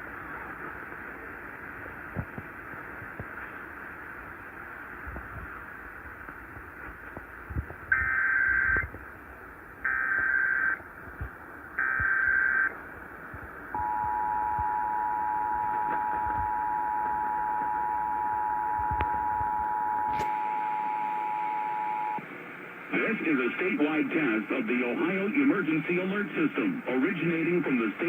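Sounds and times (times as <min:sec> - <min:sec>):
two-tone attention signal: 0:13.8 - 0:22.2.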